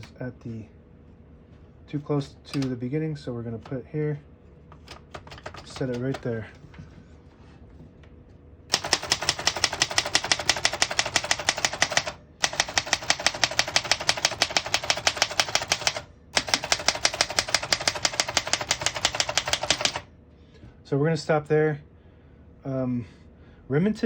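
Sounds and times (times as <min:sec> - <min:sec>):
manual typewriter clacking: 0:02.5 - 0:02.8, 0:04.8 - 0:06.3, 0:08.7 - 0:20.1.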